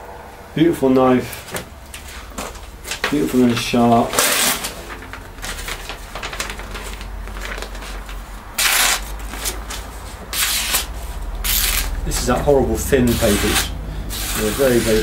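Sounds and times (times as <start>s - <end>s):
paper rustling and crackling: 2.0s - 12.4s
knife slicing paper: 4.0s - 4.9s, 10.4s - 10.9s, 11.5s - 12.0s, 13.1s - 15.0s.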